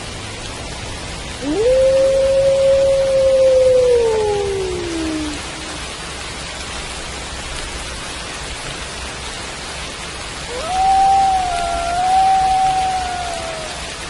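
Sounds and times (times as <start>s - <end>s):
steady rain falling: 0.0s - 14.0s
wolf howling: 1.4s - 5.8s, 10.5s - 14.0s.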